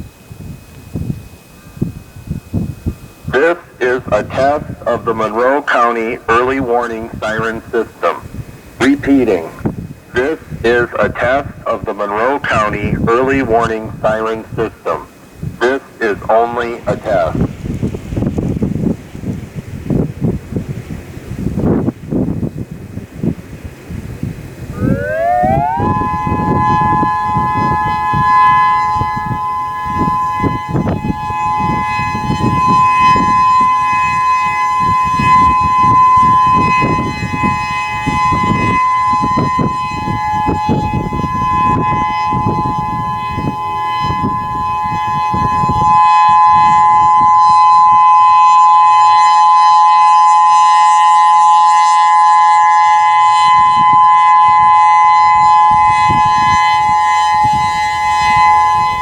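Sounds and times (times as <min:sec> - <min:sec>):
wind buffeting microphone: 0:00.0 - 0:59.0
warning siren two-note chord: 0:24.6 - 0:59.0.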